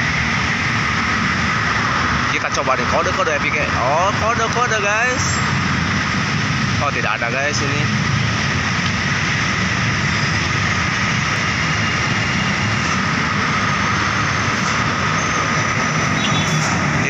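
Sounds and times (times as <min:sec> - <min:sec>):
heavy road traffic rumble: 0:00.0 - 0:17.0.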